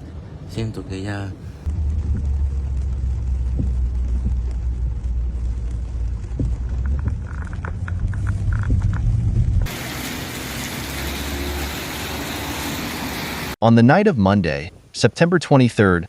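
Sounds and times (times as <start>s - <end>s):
low rumble: 0.0s - 10.6s
heavy rain hissing: 9.6s - 13.6s.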